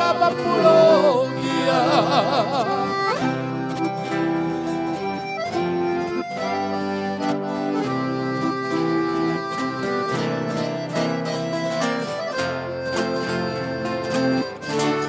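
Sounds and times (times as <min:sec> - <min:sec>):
accordion melody: 0:00.0 - 0:15.0
strummed guitar: 0:00.0 - 0:15.0.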